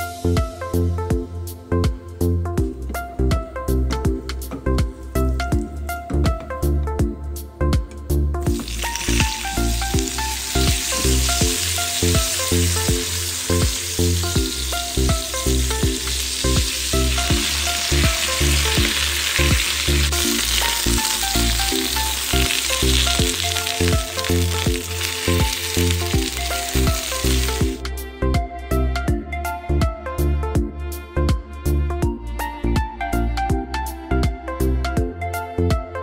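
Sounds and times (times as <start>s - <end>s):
background music with beat: 0.0s - 36.0s
food sizzling in oil: 8.5s - 27.8s.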